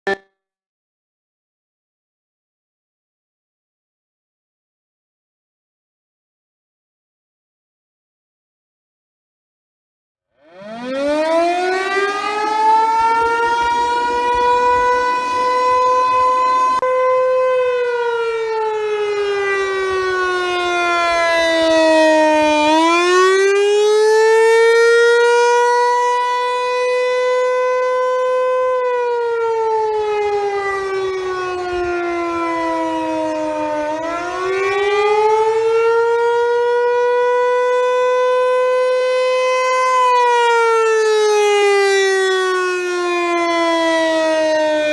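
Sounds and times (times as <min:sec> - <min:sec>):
rising and falling siren wail: 0:10.3 - 0:44.9.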